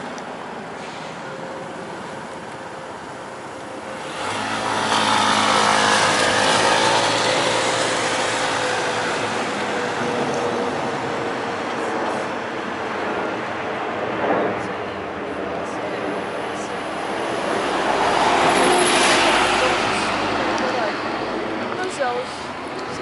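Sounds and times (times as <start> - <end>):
vehicle passing close by: 3.9 - 11.7, 17.0 - 22.6.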